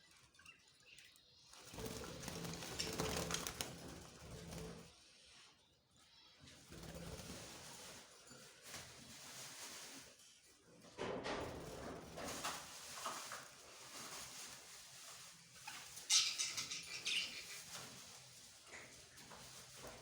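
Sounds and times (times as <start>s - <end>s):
birds rustling and scratching: 0.0s - 20.0s
wing flutters: 1.5s - 5.0s.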